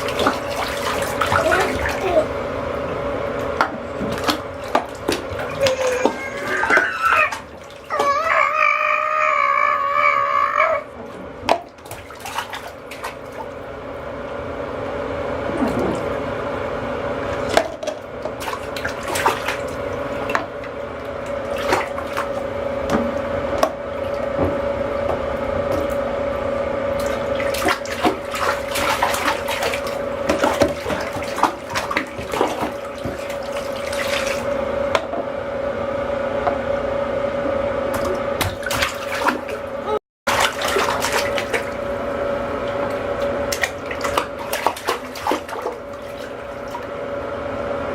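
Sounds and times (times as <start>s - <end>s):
bathwater splashing: 0.0s - 8.9s, 11.2s - 13.8s, 15.4s - 26.1s, 26.9s - 34.7s, 37.9s - 46.9s
steady watery hum: 0.0s - 47.9s.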